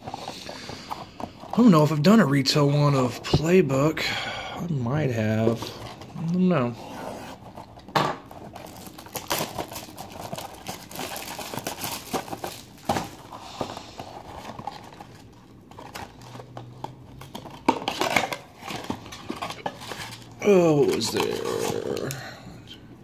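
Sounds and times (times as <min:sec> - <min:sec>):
plastic wrap crinkling: 0:05.5 - 0:22.2.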